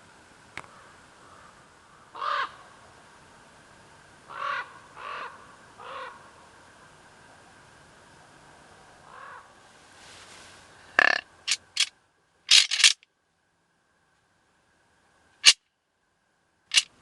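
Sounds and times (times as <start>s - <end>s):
crow cawing: 0.6s - 2.6s, 4.3s - 6.3s, 9.0s - 9.5s.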